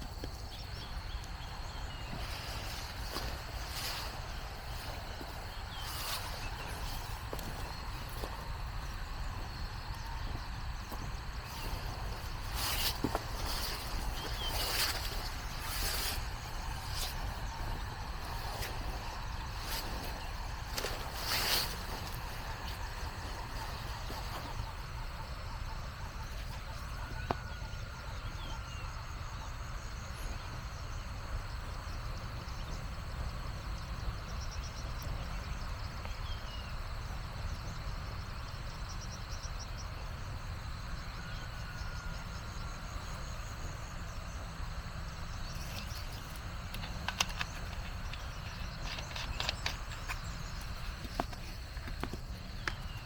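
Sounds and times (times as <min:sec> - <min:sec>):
insect drone: 0:00.0 - 0:53.0
sharp crackling clicks: 0:45.8 - 0:51.9.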